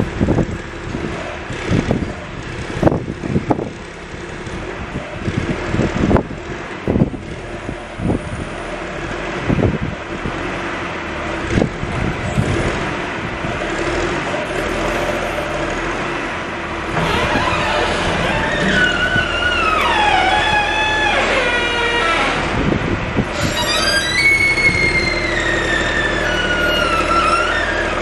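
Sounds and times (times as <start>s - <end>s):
diesel engine running: 0.0s - 28.0s
engine knocks: 0.0s - 28.0s
squeal sliding down in pitch: 17.0s - 22.4s, 23.3s - 28.0s.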